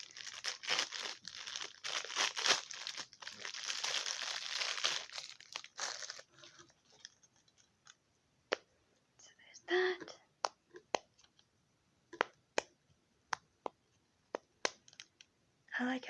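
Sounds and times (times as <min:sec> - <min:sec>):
packaging crinkling: 0:00.0 - 0:08.0.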